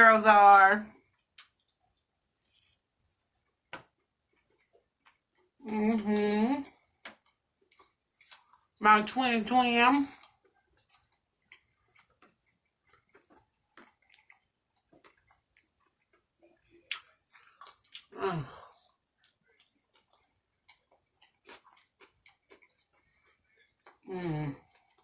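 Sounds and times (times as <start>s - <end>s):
person chewing with wet clicks: 0.9s - 5.6s, 6.6s - 8.8s, 10.1s - 25.0s
person humming mm: 18.2s - 18.7s.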